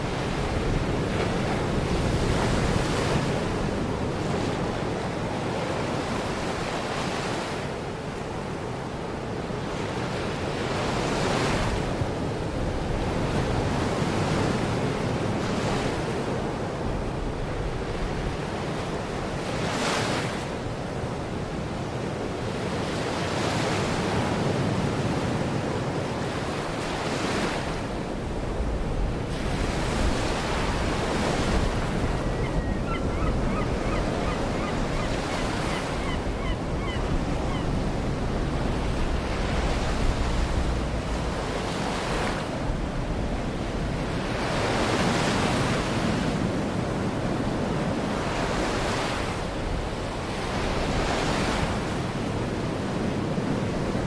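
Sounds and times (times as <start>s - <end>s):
wind rumbling on microphone: 0.0s - 5.6s, 27.8s - 54.0s
waves washing ashore: 0.0s - 54.0s
faint bird calls: 32.0s - 37.7s.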